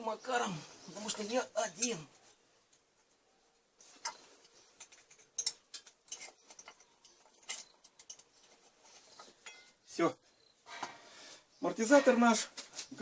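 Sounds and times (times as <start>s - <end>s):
metal parts and tools clicking: 4.0s - 9.8s.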